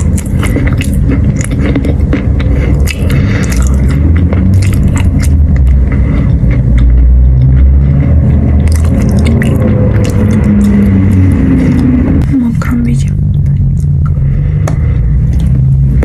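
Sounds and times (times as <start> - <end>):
chalk crunching in mouth: 0.0 - 12.0
low mouth rumble: 0.0 - 16.0.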